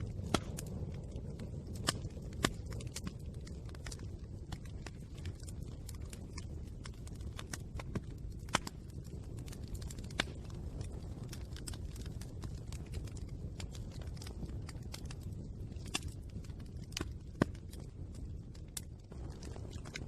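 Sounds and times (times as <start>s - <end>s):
fire crackling: 0.0s - 20.0s
loud fire pops: 0.0s - 20.0s.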